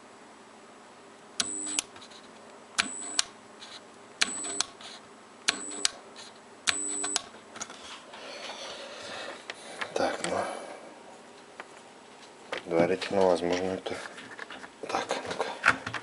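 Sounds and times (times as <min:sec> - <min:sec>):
machine humming with high whine: 0:00.0 - 0:11.8.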